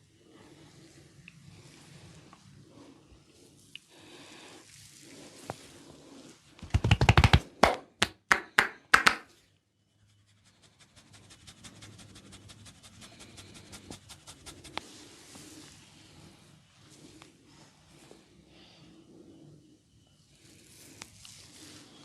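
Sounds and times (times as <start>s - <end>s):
hands slapping during head massage: 6.6s - 9.3s.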